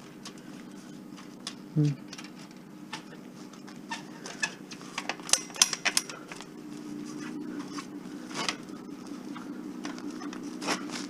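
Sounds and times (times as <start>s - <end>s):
steady low hum: 0.0s - 11.0s
metallic clicks and rattles: 4.2s - 6.4s.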